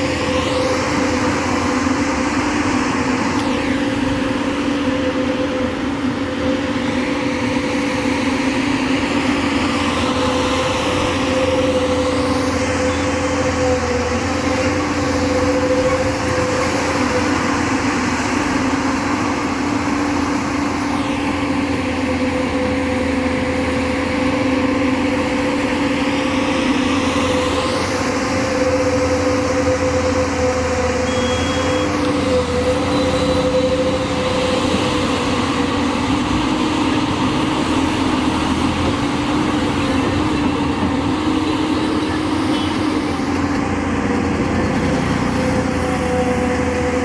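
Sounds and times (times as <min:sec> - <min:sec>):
diesel engine under load: 0:00.0 - 0:47.0
faint high whines: 0:28.5 - 0:34.7.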